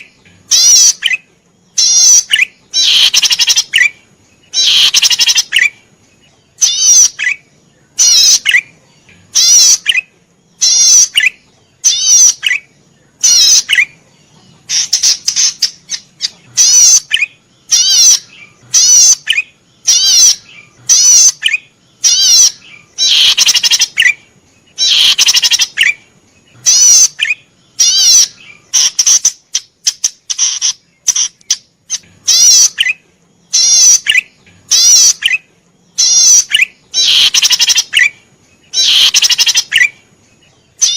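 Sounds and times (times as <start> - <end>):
songbird singing rapid trills: 0.0 - 40.9.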